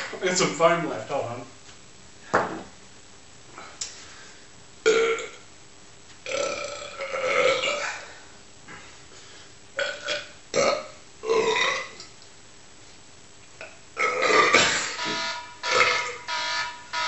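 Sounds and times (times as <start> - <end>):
man burping: 4.8 - 5.4, 6.3 - 8.1, 9.8 - 12.0, 13.6 - 15.1
electronic alarm beeping: 14.6 - 17.0.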